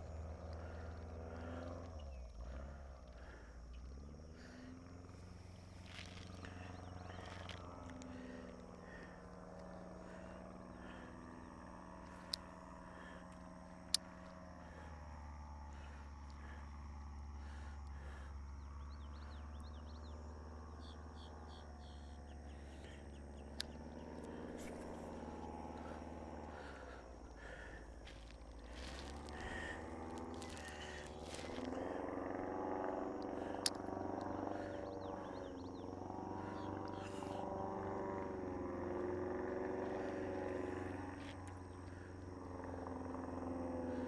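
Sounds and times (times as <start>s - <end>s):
low engine hum: 0.0s - 44.0s
sharp clicks: 33.2s - 33.9s.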